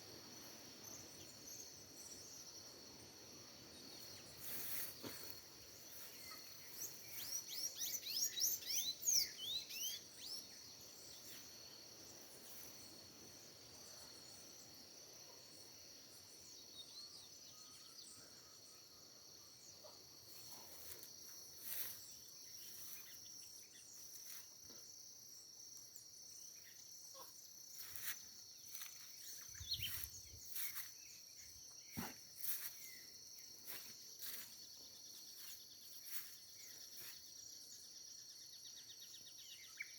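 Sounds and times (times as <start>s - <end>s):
bird chirps: 6.0s - 10.6s, 28.8s - 33.2s, 38.6s - 39.9s
insects trilling: 18.6s - 39.9s.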